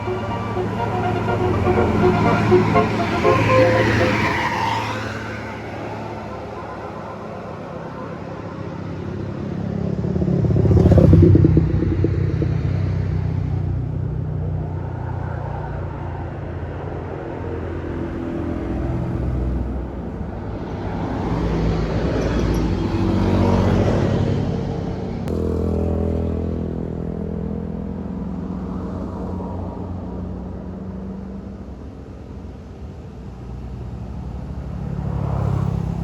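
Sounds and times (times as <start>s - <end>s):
vehicles passing: 0.0s - 13.8s
engines humming: 0.0s - 14.4s, 25.3s - 28.2s.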